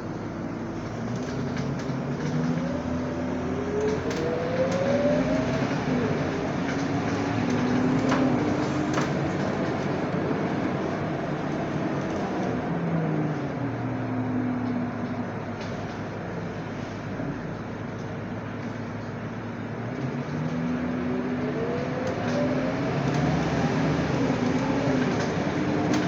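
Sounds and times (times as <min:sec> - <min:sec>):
bus engine accelerating: 0:00.0 - 0:26.0
rising drivetrain whine: 0:00.0 - 0:26.0.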